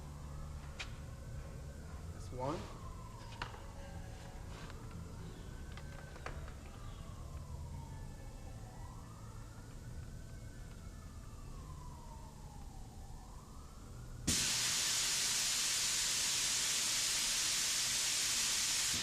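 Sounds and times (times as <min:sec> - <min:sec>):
faint siren wailing: 0:00.0 - 0:19.0
loud steady hiss: 0:14.3 - 0:19.0.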